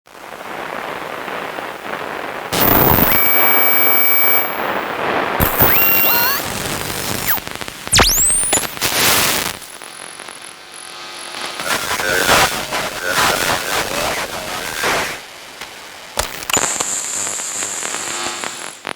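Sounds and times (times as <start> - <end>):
radio static crackling: 1.8 - 18.9
steady radio tone: 2.6 - 7.4, 8.0 - 9.4, 11.4 - 15.2
tones stepping upward: 5.4 - 6.4
pop: 16.2 - 16.7.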